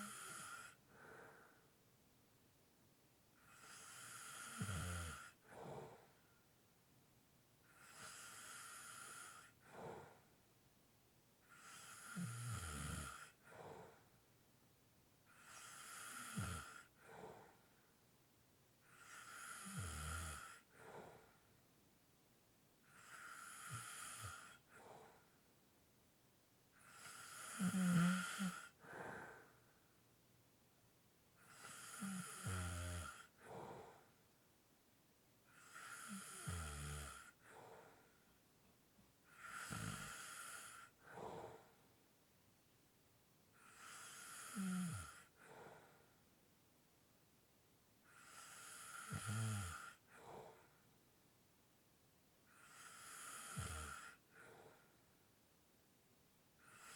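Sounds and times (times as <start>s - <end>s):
person snoring: 0.0s - 0.8s, 3.5s - 6.0s, 11.5s - 13.4s, 15.4s - 16.9s, 18.9s - 20.6s, 22.9s - 24.7s, 26.8s - 29.4s, 31.5s - 34.0s, 35.6s - 37.4s, 39.3s - 41.6s, 43.6s - 45.4s, 48.1s - 50.0s, 52.6s - 54.2s.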